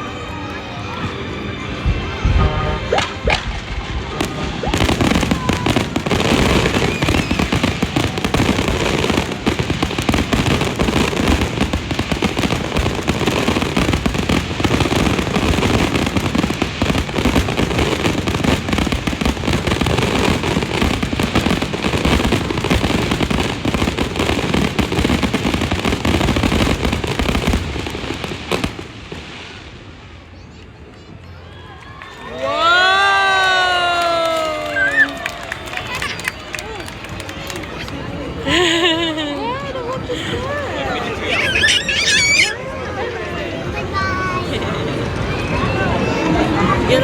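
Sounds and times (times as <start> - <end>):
fireworks bangs and crackling: 1.8 - 30.6.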